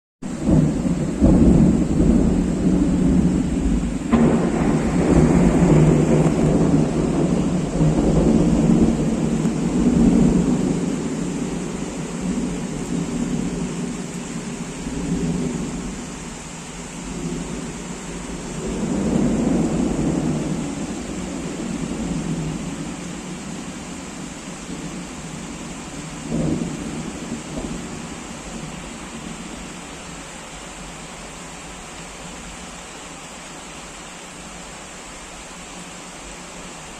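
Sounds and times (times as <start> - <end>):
heavy rain: 0.2 - 36.9
thunder rumbling: 0.3 - 29.8
sharp thunder crack: 0.5 - 11.0.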